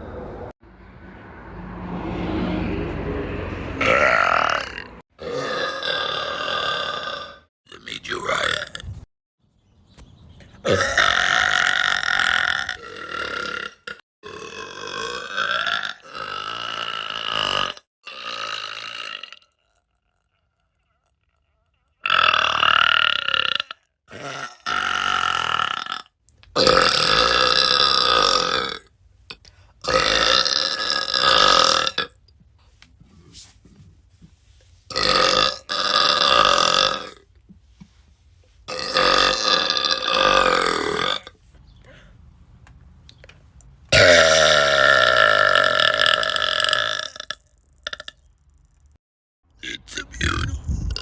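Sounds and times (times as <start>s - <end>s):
woman burping: 10.7s - 19.3s, 44.0s - 47.3s.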